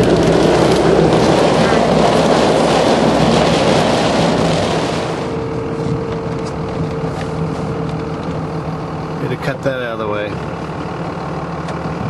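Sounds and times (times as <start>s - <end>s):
loud rushing noise: 0.0s - 5.8s
vehicle hum: 0.0s - 12.0s.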